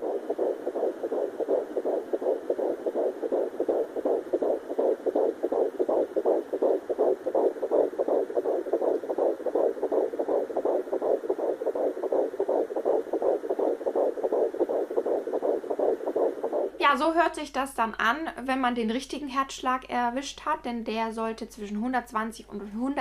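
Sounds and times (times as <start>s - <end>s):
fetal heartbeat on doppler monitor: 0.0s - 17.0s.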